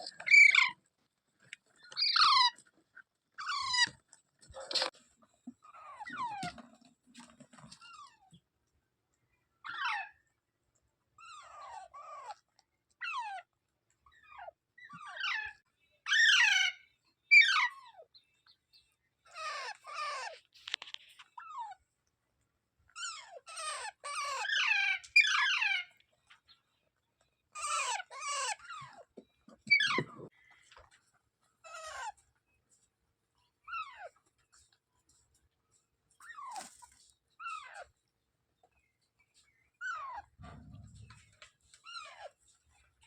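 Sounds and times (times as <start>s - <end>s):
parakeet screeching calls: 0.2s - 0.8s, 2.0s - 2.6s, 23.0s - 25.9s, 27.6s - 28.9s.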